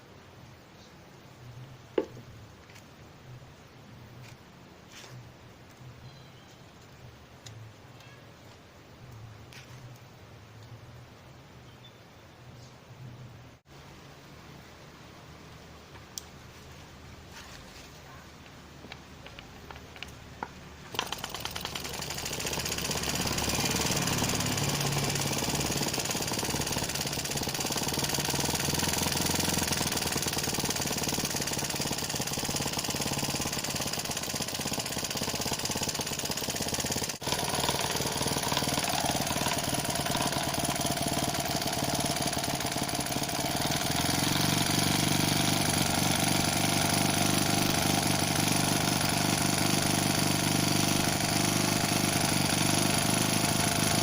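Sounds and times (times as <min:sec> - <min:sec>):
small engine rattling: 0:19.2 - 0:54.0.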